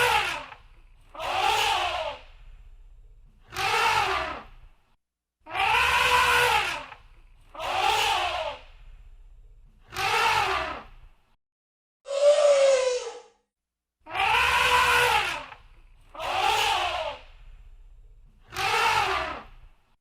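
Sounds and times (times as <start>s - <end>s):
elephant trumpeting: 5.5s - 6.9s, 14.1s - 15.5s.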